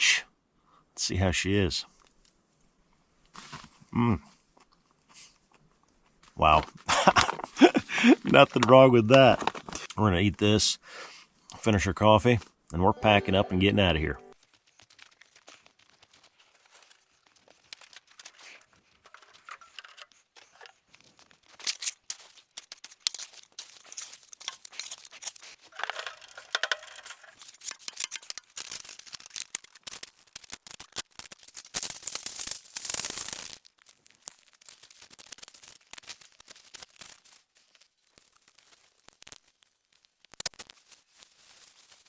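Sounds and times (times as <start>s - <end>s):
handling rustling and scraping: 3.2s - 3.8s, 14.4s - 42.0s.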